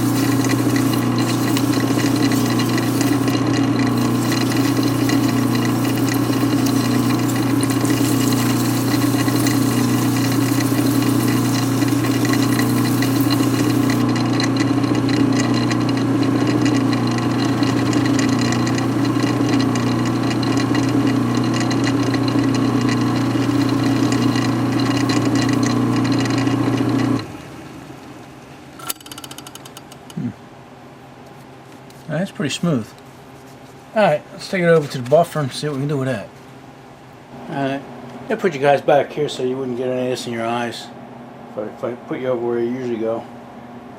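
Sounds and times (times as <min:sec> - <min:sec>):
sandpaper sanding piston: 0:00.0 - 0:14.2
electric motor humming: 0:00.0 - 0:27.3.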